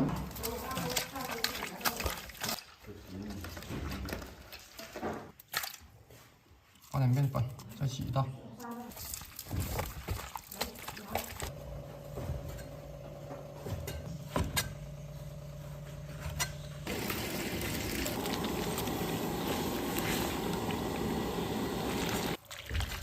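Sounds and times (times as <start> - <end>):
wet knocks and handling: 8.9 - 11.5
steady low hum: 11.5 - 22.4
running water rushing: 16.9 - 22.4.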